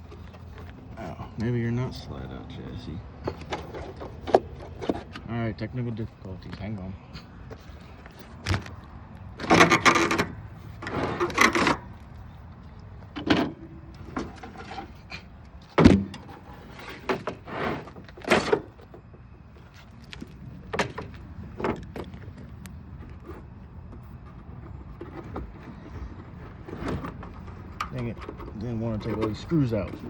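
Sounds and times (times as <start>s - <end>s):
metal case scraping and clunking: 3.2s - 5.3s, 7.5s - 12.0s, 13.1s - 30.0s.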